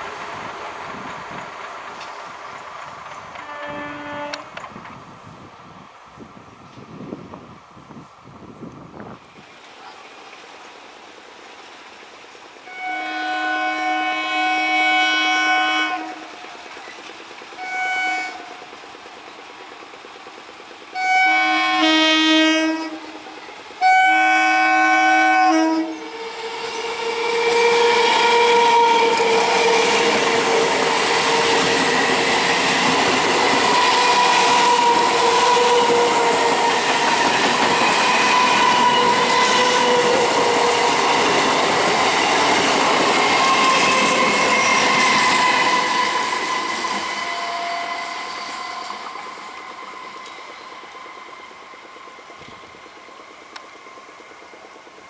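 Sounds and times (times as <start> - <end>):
train wheels clattering on rails: 0.0 - 5.1, 8.6 - 55.0
train air horn blasts: 3.3 - 4.6, 12.6 - 16.3, 17.6 - 18.6, 21.0 - 23.2, 23.8 - 41.4, 42.0 - 50.2.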